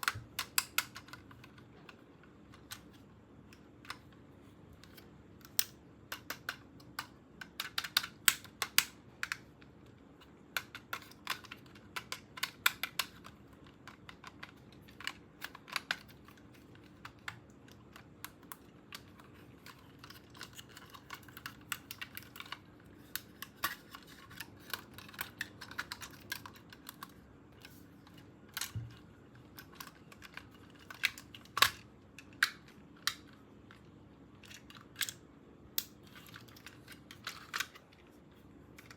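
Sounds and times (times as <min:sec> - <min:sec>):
plastic clicks and taps: 0:04.8 - 0:09.5.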